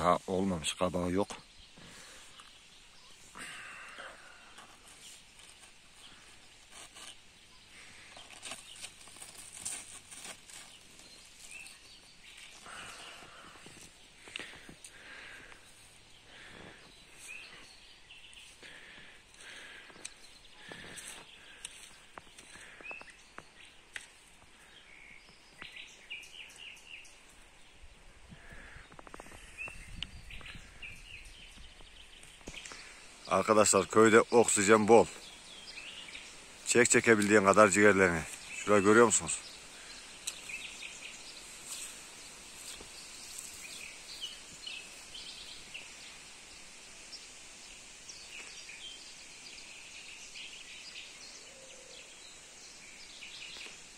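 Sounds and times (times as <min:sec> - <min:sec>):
small birds chirping: 0:00.0 - 0:53.9
plants rustling: 0:01.8 - 0:24.8, 0:31.7 - 0:45.9
light crackles: 0:03.2 - 0:17.6, 0:18.3 - 0:25.8, 0:31.5 - 0:33.6, 0:34.9 - 0:48.8
faint footsteps: 0:04.4 - 0:24.6, 0:41.5 - 0:45.1.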